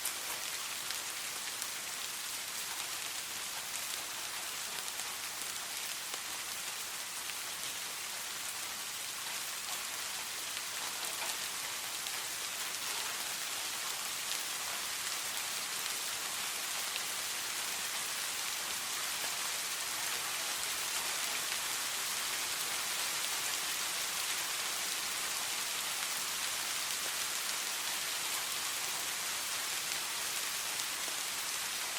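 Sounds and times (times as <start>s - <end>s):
steady rain falling: 0.0s - 31.9s.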